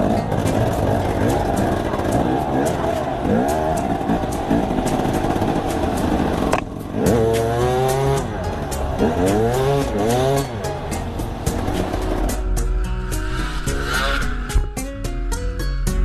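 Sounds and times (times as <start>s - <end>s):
motorcycle engine revving: 0.0s - 14.9s.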